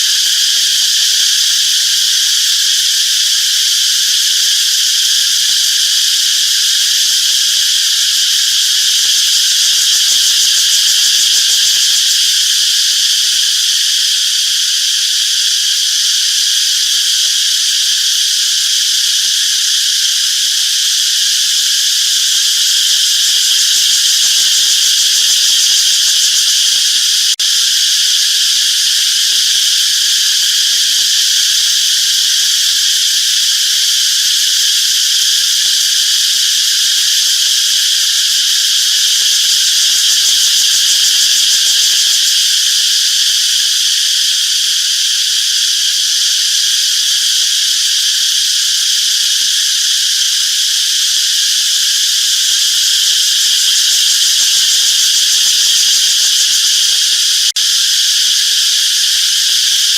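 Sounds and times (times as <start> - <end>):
cicadas buzzing: 0.0 - 59.9.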